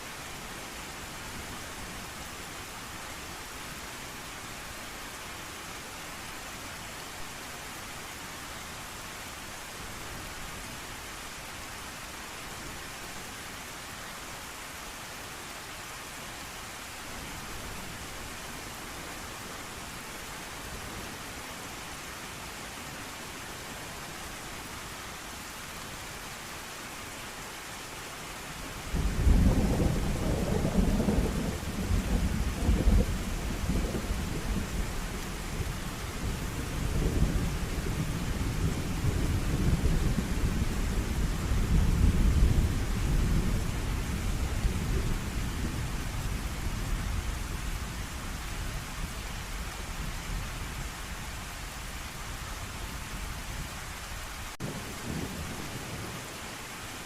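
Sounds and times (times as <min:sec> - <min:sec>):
steady heavy rain: 0:00.0 - 0:57.0
rolling thunder: 0:29.0 - 0:45.9.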